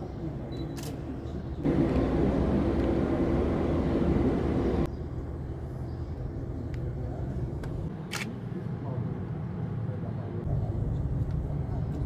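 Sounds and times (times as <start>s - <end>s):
jet engine rush: 1.6s - 4.9s.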